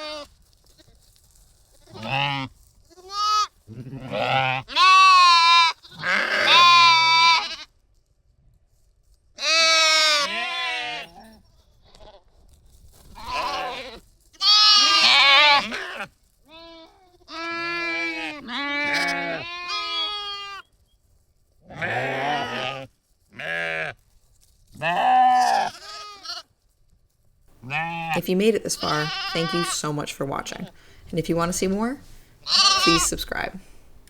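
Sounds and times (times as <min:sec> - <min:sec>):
sheep bleating: 0:00.0 - 0:00.3, 0:01.8 - 0:07.7, 0:09.4 - 0:11.3, 0:13.2 - 0:20.7, 0:21.7 - 0:24.0, 0:24.8 - 0:26.5, 0:27.6 - 0:30.0, 0:32.4 - 0:33.2.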